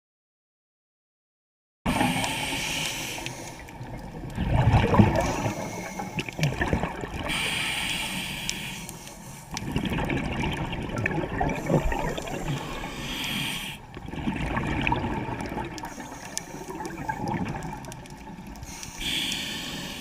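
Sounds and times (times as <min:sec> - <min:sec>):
regulator inhale hiss: 0:01.9 - 0:03.8, 0:05.2 - 0:06.3, 0:07.3 - 0:09.6, 0:11.6 - 0:14.0, 0:15.9 - 0:17.0, 0:18.6 - 0:20.0
gurgling exhaust bubbles: 0:03.8 - 0:07.3, 0:09.5 - 0:12.9, 0:14.0 - 0:16.0, 0:16.6 - 0:18.5.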